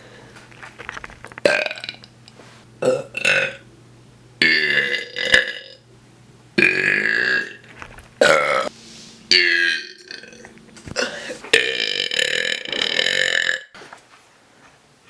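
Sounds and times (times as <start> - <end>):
person belching: 1.4 - 2.1, 2.8 - 3.6, 4.4 - 5.8, 6.6 - 7.6, 8.2 - 8.7, 9.3 - 13.7.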